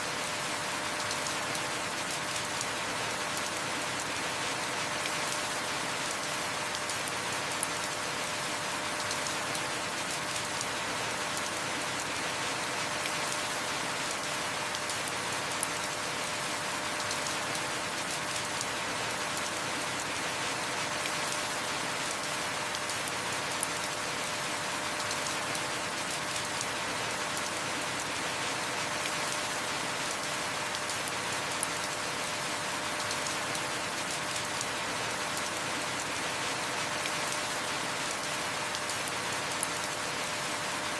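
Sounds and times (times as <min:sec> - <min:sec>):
heavy rain: 0:00.0 - 0:40.9.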